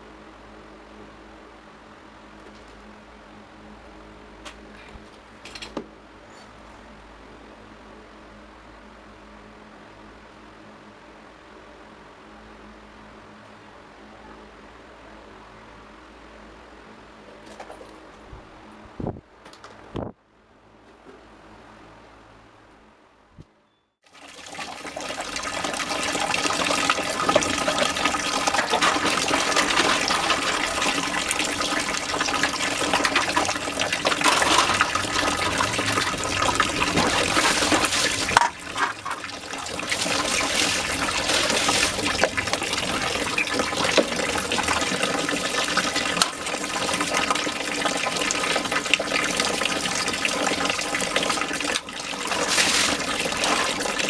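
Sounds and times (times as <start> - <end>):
running water rushing: 24.1 - 54.0.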